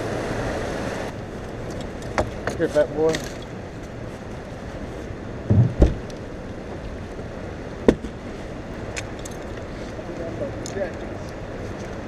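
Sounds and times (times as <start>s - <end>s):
water and wind rushing around boat: 0.0s - 12.0s
dull thumps: 5.5s - 6.0s
sharp knock: 5.5s - 6.0s.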